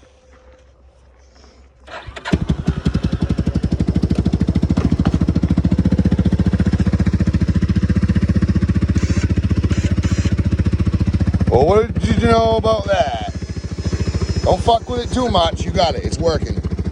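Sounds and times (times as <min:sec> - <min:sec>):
engine cranking and idling: 0:01.7 - 0:16.9.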